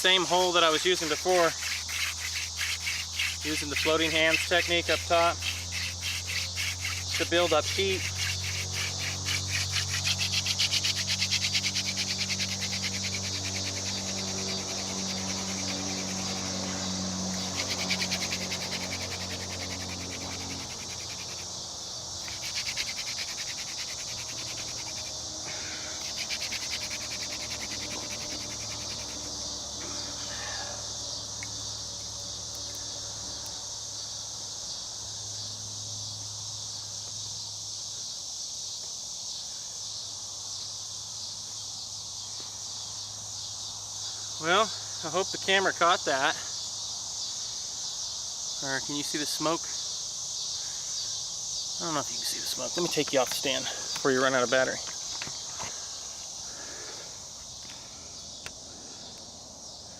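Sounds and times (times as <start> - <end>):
insects chirring: 0.0 - 59.9
wooden spindle rubbing: 0.2 - 21.5, 22.2 - 25.2, 26.0 - 29.4.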